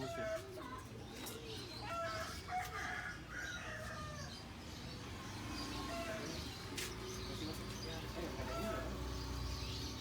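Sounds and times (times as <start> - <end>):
birds calling: 4.2 - 10.0.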